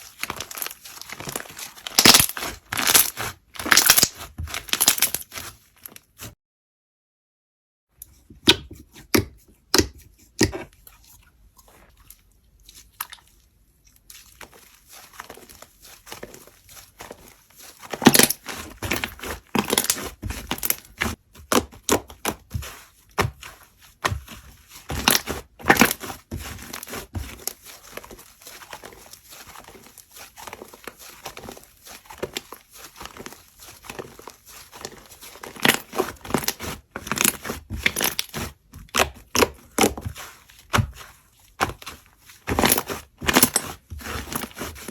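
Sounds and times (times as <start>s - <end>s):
slime popping and crackling: 0.1s - 5.5s, 17.9s - 23.4s, 32.2s - 41.0s, 42.5s - 44.8s.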